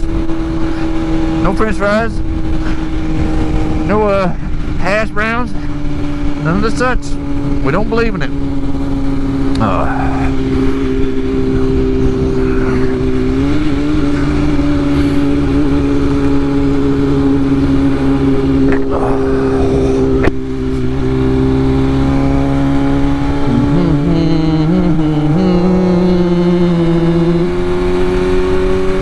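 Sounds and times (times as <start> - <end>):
motorcycle engine cruising: 0.0 - 29.0
wind rush: 2.0 - 6.4, 8.5 - 20.8.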